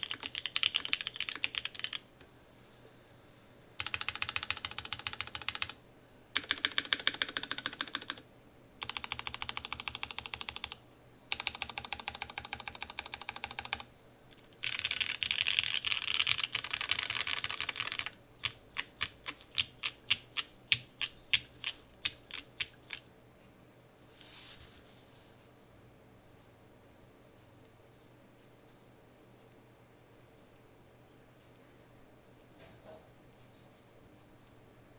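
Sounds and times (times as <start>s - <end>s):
fast typing on mechanical keyboard: 0.0s - 2.0s, 3.8s - 5.8s, 6.4s - 8.2s, 8.8s - 13.9s, 14.5s - 23.0s.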